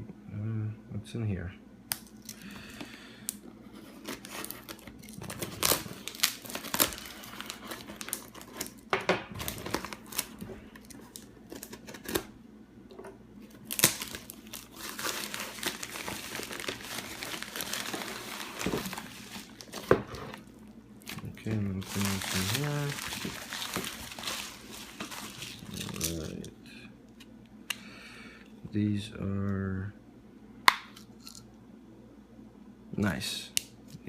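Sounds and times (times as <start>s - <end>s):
wrapping crinkling and tearing: 3.8s - 12.3s, 13.4s - 26.5s.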